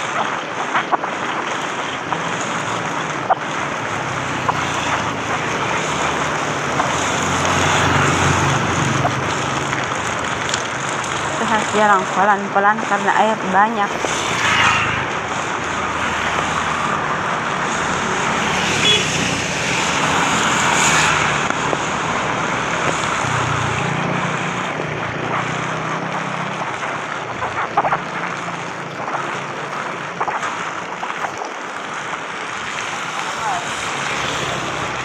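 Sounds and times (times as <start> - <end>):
sharp ticks: 0.0 - 14.2, 22.7 - 32.9
heavy rain on umbrella: 0.0 - 35.0
road traffic: 0.0 - 35.0.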